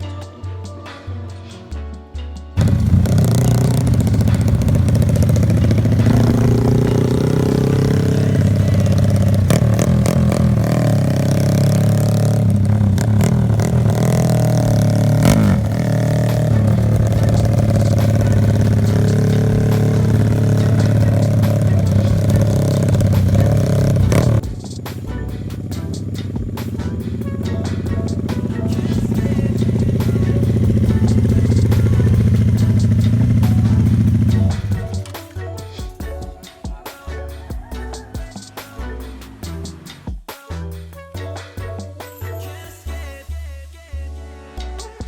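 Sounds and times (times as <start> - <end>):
dirt bike engine idling: 2.6 - 36.5, 37.3 - 40.1.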